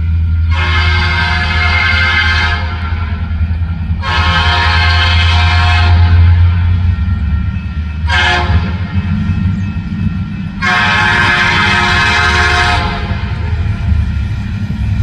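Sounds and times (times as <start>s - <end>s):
diesel locomotives rumbling: 0.0s - 15.0s
train air horn blasts: 0.4s - 3.2s, 4.0s - 6.9s, 8.0s - 9.2s, 10.6s - 14.0s.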